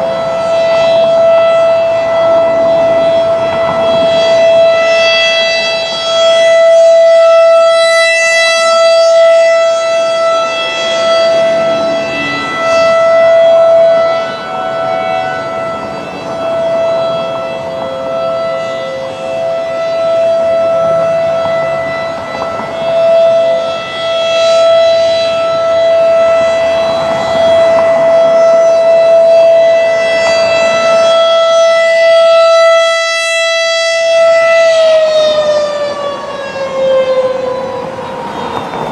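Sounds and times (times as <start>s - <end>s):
rotating tornado siren tone: 0.0s - 38.9s.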